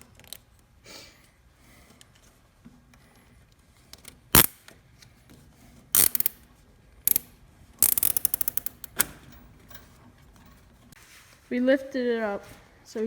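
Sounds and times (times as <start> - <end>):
zip ties ratcheting: 6.0 - 6.4, 7.8 - 9.1.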